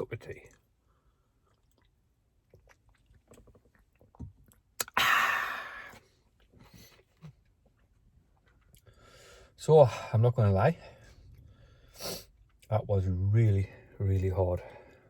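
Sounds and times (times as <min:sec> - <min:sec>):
man chewing: 0:01.2 - 0:05.1, 0:05.7 - 0:09.2.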